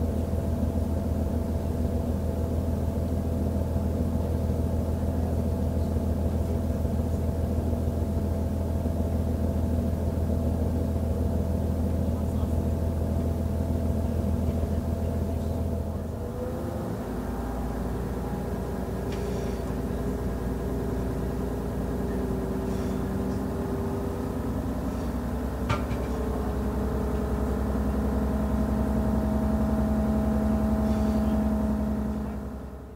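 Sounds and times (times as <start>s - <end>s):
diesel railcar engine running: 0.0s - 32.9s.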